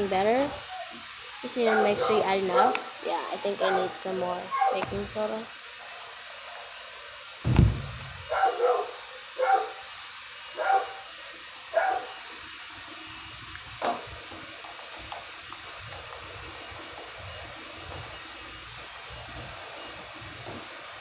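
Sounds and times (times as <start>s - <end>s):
dog barking: 1.6s - 2.9s, 3.5s - 4.9s, 8.3s - 9.8s, 10.6s - 11.0s, 11.8s - 12.2s.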